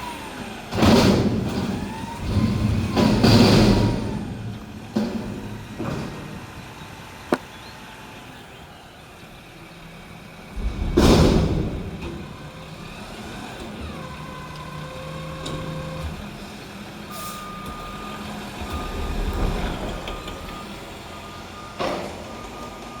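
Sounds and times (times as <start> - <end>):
garbage truck engine running: 0.0 - 23.0
reversing alarm beeps: 17.1 - 23.0.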